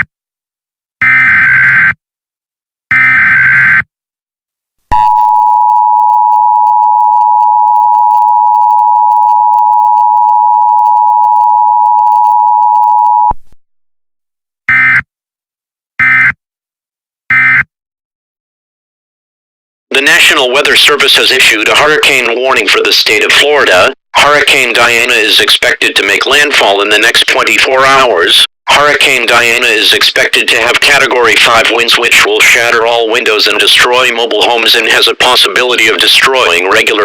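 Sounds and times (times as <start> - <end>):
two-tone attention signal: 4.9 - 13.4.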